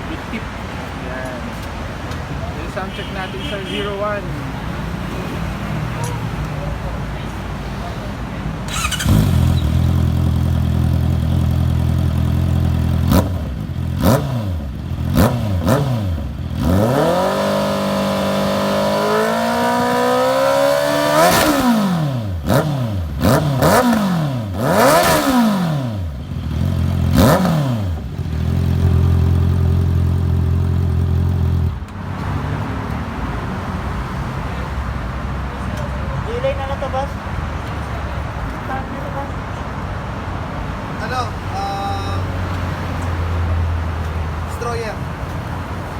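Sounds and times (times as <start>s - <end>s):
motorcycle engine revving: 8.7s - 32.7s.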